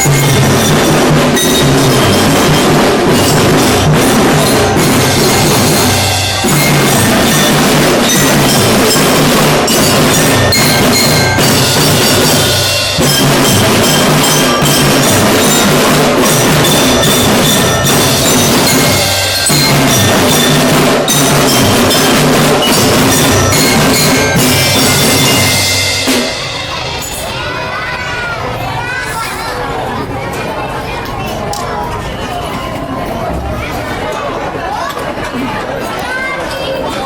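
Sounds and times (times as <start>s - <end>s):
snare and bass drums: 0.0s - 27.1s
bell lyre melody: 0.0s - 27.8s.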